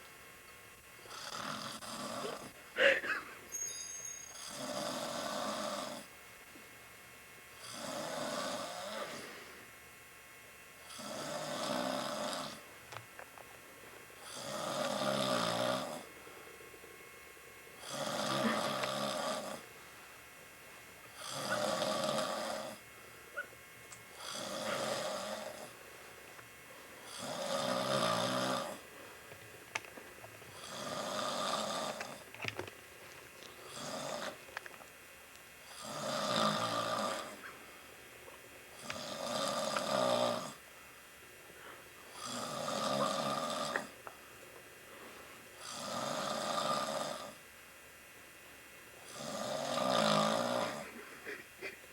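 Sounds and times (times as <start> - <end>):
man snoring: 1.1 - 3.2, 4.3 - 6.1, 7.6 - 9.4, 10.8 - 12.6, 14.2 - 16.1, 17.8 - 19.7, 21.1 - 22.8, 24.1 - 25.8, 27.0 - 28.9, 30.5 - 32.2, 33.7 - 34.4, 35.6 - 37.5, 38.8 - 40.6, 42.1 - 44.0, 45.6 - 47.4, 49.0 - 51.0.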